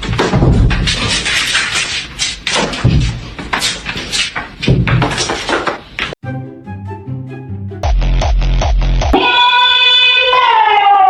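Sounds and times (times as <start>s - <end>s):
music: 6.2s - 9.2s.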